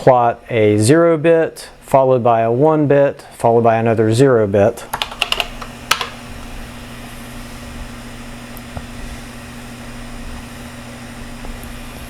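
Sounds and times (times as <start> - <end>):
background hiss: 0.0 - 12.0
equipment humming: 0.0 - 12.0.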